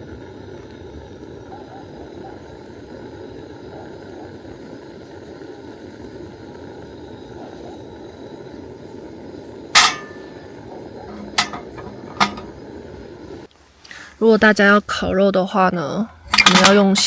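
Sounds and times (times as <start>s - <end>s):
fire popping: 2.6s - 14.0s
wood fire crackling: 4.6s - 14.7s.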